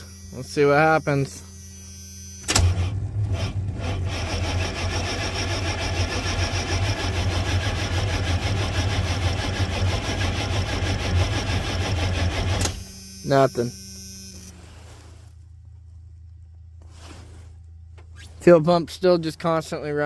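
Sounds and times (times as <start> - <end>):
engine cranking on starter motor: 1.3 - 14.5.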